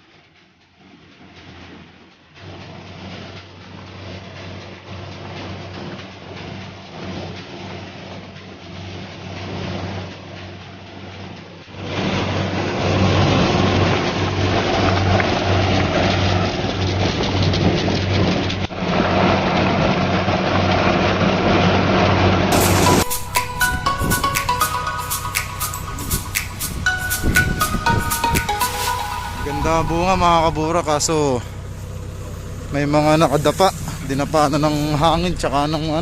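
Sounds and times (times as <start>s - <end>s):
mechanical clatter: 9.9s - 22.5s
harvester engine humming: 22.4s - 36.0s.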